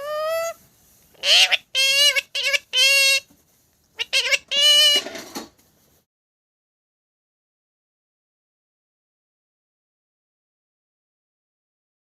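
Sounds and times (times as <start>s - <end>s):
parrot calling: 0.0s - 0.6s, 1.2s - 3.3s, 4.0s - 5.2s.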